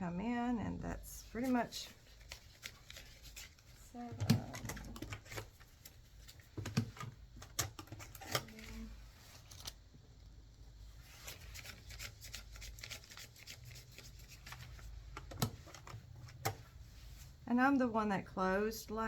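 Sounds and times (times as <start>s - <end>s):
paper bills rustling and flicking: 1.4s - 9.8s, 11.0s - 16.6s.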